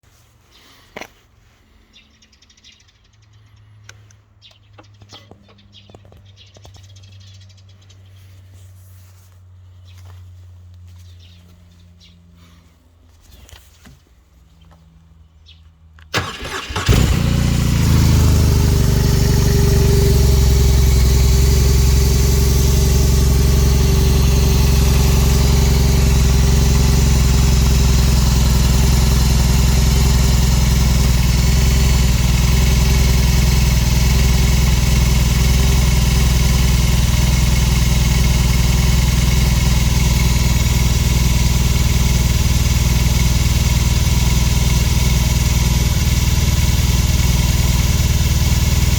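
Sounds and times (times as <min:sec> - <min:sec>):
motorcycle starter cranking: 0:16.1 - 0:21.2
motorcycle engine idling: 0:16.2 - 0:48.9.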